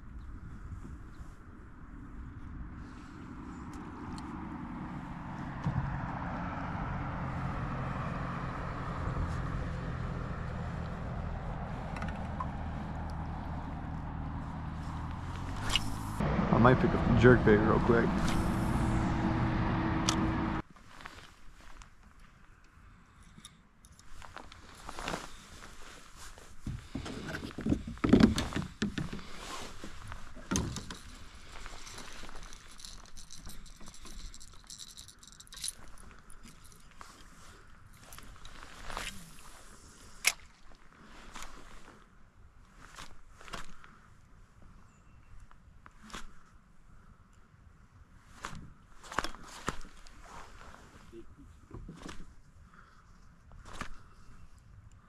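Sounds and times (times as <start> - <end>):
low engine-like hum: 0.2 - 20.6
rushing noise: 15.3 - 20.6
fishing gear rattling: 27.2 - 39.4.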